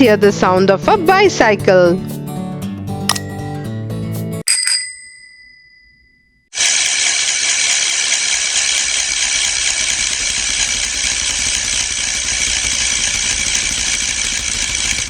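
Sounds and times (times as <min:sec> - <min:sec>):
bicycle rattling hiss: 0:06.6 - 0:15.0.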